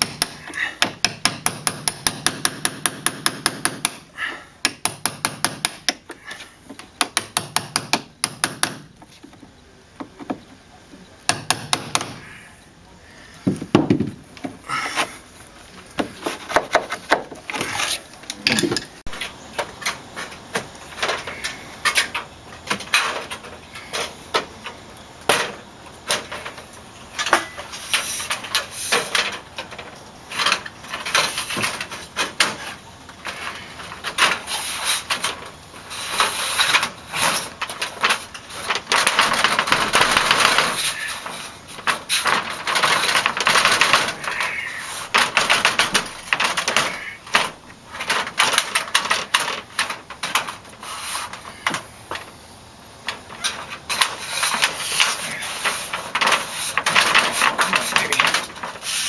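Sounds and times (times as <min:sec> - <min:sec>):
scraping or rasping: 0:14.5 - 0:19.4, 0:30.3 - 0:52.2, 0:53.1 - 0:59.0.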